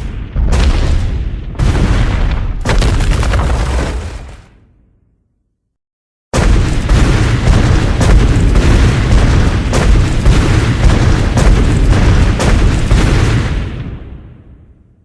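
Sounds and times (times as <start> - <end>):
sharp cracks: 6.4 - 13.8.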